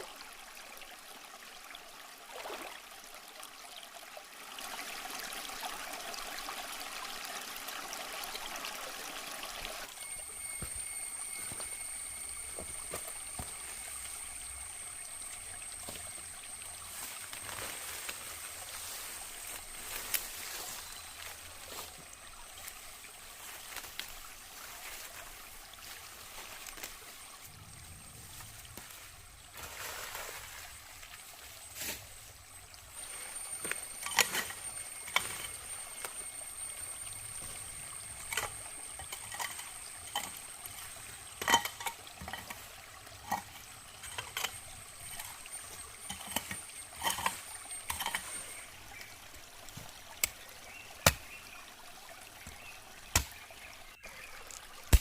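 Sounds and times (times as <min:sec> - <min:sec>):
water trickling and pouring: 0:00.0 - 0:55.0
high-pitched whine: 0:09.8 - 0:22.0, 0:31.7 - 0:42.5.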